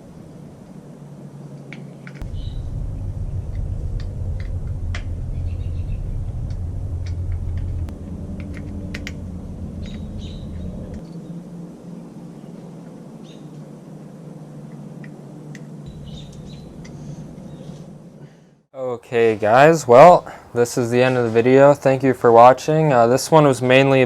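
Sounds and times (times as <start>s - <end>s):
faint bird chirps: 2.2s - 2.7s, 9.8s - 13.6s, 15.9s - 17.9s
low rumble: 2.2s - 18.7s.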